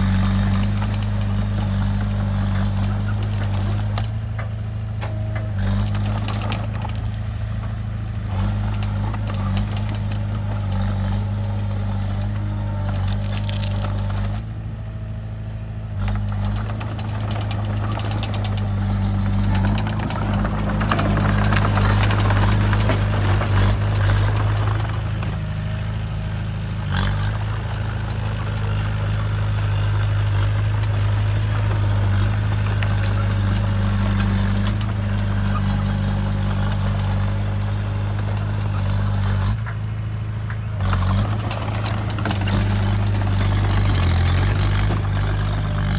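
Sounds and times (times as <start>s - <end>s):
diesel machinery engine drone: 0.0s - 45.9s
knocks and cracks: 16.1s - 25.7s.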